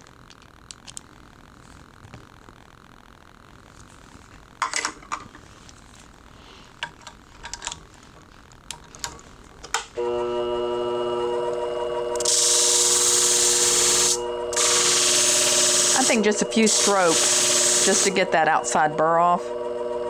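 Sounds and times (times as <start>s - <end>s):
tools clicking and knocking: 6.8s - 7.9s
sharpening machine motor humming: 10.0s - 20.0s.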